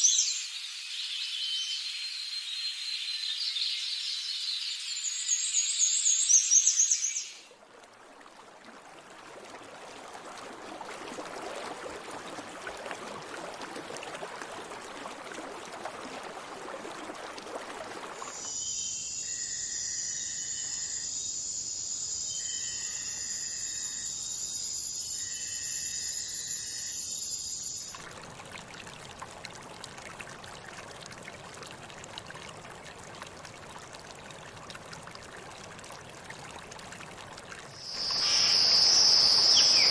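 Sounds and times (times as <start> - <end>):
even hiss: 37.8 - 39.9
high bird calls: 37.8 - 39.9.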